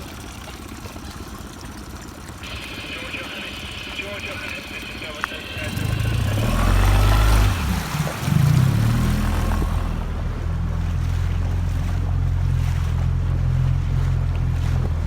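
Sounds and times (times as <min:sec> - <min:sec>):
outboard motor droning: 0:00.0 - 0:15.0
wind: 0:00.0 - 0:15.0.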